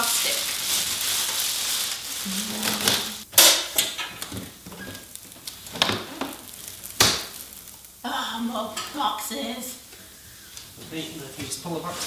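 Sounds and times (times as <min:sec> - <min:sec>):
cardboard packaging noise: 0:00.0 - 0:03.3, 0:04.2 - 0:07.8
plastic wrapping rustling: 0:00.0 - 0:03.3, 0:04.1 - 0:07.9.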